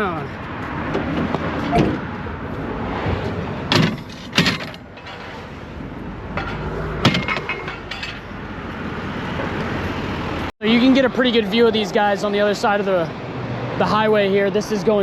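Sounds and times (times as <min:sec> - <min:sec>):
sharp bangs and knocks: 0:03.6 - 0:05.5, 0:06.3 - 0:08.3.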